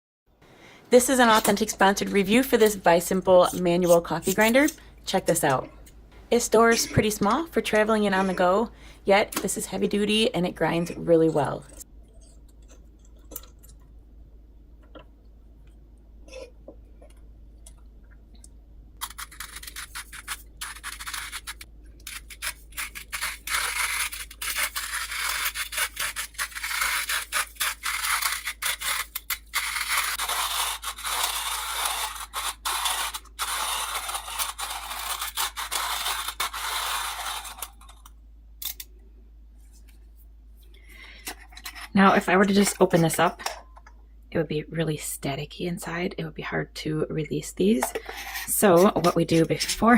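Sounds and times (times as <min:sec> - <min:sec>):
coffee grinder crunchy scraping: 0:19.0 - 0:38.1, 0:48.0 - 0:49.9.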